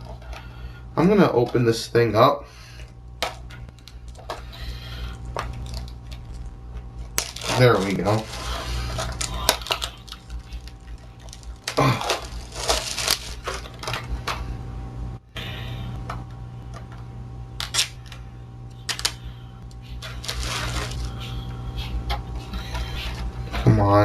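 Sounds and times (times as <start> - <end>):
steady low hum: 0.0 - 24.0
packaging crinkling and tearing: 5.3 - 14.1, 17.6 - 18.2, 19.9 - 21.4.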